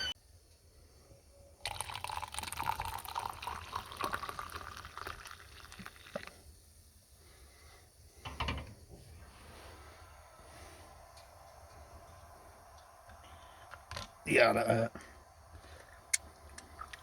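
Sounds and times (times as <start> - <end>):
water pouring into container: 1.6 - 6.4.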